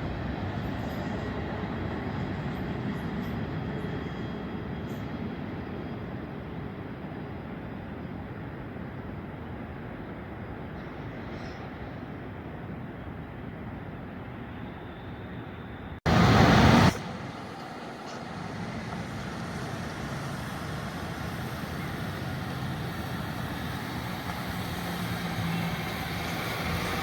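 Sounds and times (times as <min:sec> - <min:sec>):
diesel freight train rumbling: 0:00.0 - 0:27.0
loud rush of noise: 0:16.1 - 0:17.6.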